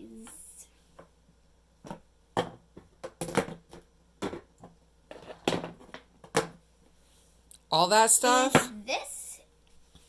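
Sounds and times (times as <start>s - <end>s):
plastic toys knocking on table: 1.8s - 6.6s.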